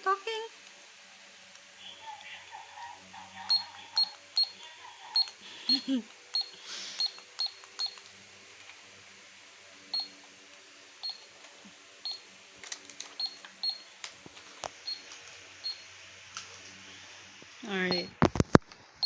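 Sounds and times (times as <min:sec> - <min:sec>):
toy scanner short high beeps: 0:03.5 - 0:04.6, 0:05.2 - 0:05.4, 0:06.4 - 0:08.0, 0:10.0 - 0:10.2, 0:11.0 - 0:11.2
plastic clicks: 0:12.6 - 0:15.4.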